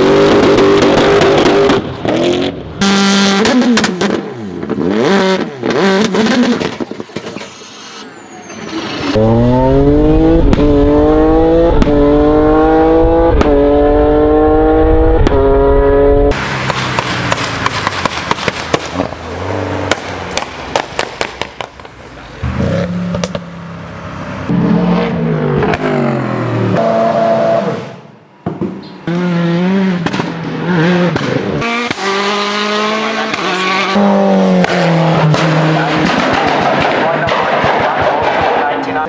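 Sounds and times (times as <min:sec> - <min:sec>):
race car engines revving: 0:00.0 - 0:39.0
exhaust pops and crackles: 0:10.4 - 0:10.8, 0:11.7 - 0:12.0, 0:16.3 - 0:22.2, 0:23.1 - 0:23.5, 0:30.0 - 0:32.1, 0:33.3 - 0:39.0.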